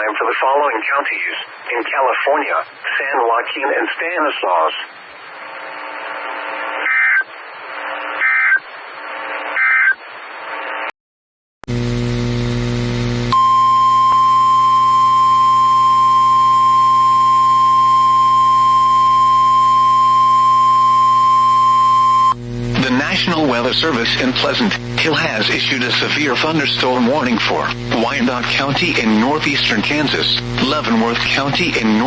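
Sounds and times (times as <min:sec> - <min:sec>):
radio static: 0:00.0 - 0:10.9, 0:16.2 - 0:32.0
buzzy hum: 0:11.7 - 0:32.0.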